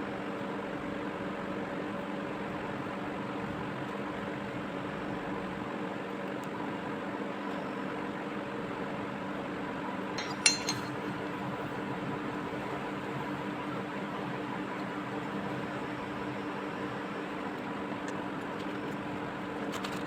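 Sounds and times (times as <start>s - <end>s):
metal tool clinking: 10.2s - 11.2s
workshop hum: 10.2s - 11.3s.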